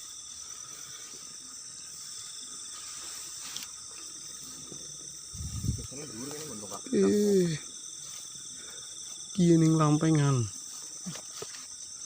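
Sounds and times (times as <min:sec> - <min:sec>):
crickets and insects chirring: 0:00.0 - 0:12.0.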